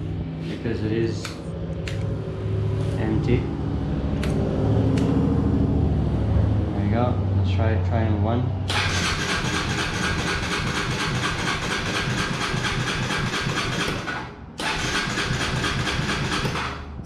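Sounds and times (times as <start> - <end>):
electric starter cranking engine: 8.7 - 16.9.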